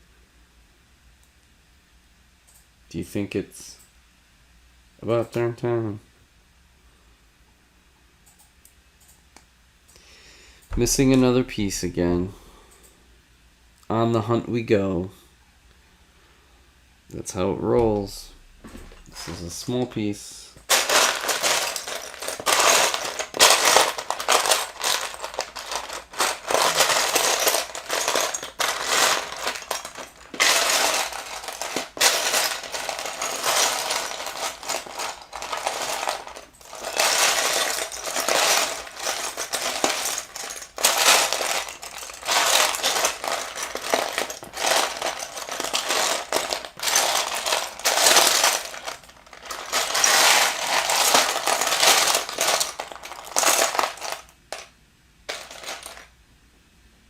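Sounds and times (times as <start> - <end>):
plastic building pieces clattering: 20.6 - 54.7, 55.3 - 56.1.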